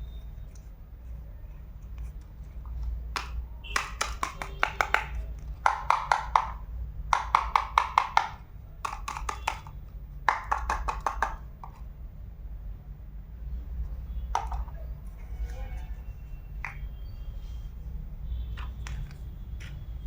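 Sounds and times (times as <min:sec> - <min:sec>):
small hard taps of utensils: 0:02.6 - 0:11.9, 0:14.3 - 0:14.8.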